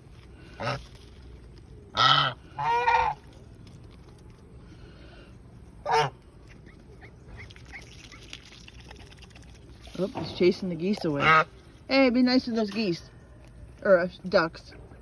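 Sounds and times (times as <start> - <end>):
geese honking: 0.5 - 1.0, 1.9 - 3.3, 5.8 - 6.3, 10.9 - 11.6.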